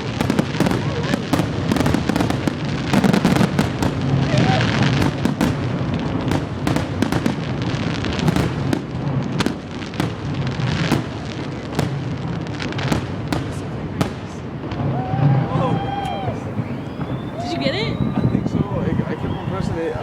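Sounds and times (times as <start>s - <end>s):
fireworks bangs: 0.0s - 20.0s.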